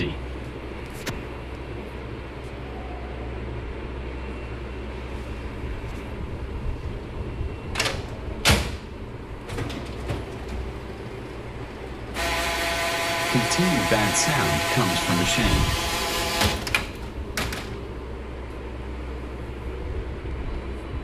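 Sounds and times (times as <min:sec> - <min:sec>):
copier rumbling and grinding: 0:03.7 - 0:20.2.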